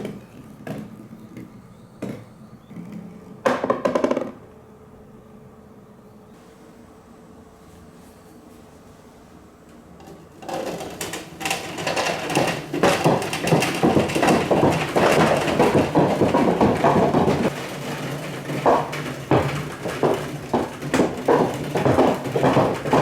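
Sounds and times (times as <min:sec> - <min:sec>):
faint hum: 0:00.0 - 0:10.5.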